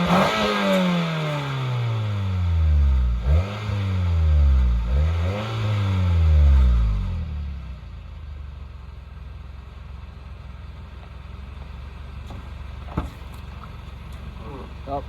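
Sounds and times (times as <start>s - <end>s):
car engine idling: 7.9s - 15.0s.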